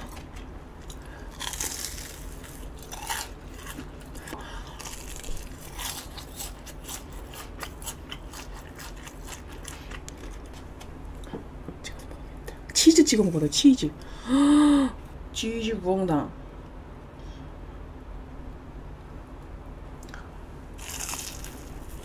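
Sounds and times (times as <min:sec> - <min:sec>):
person chewing crunchy food: 0:00.0 - 0:11.3, 0:20.8 - 0:22.0.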